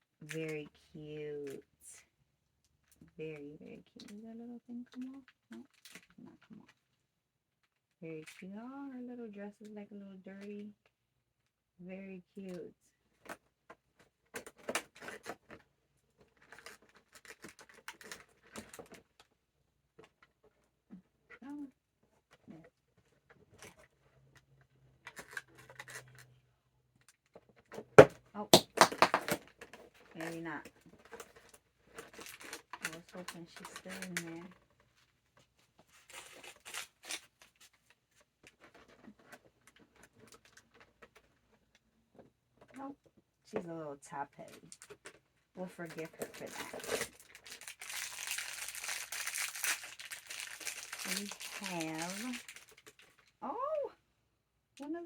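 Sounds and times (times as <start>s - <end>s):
packaging crinkling: 31.2s - 34.5s, 35.9s - 37.8s, 46.0s - 53.3s.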